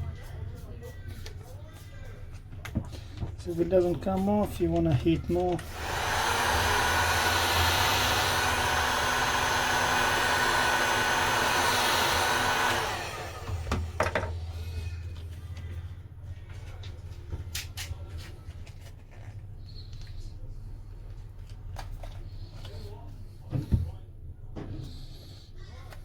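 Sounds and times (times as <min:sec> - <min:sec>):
hot-air blower whining: 0:03.2 - 0:15.0.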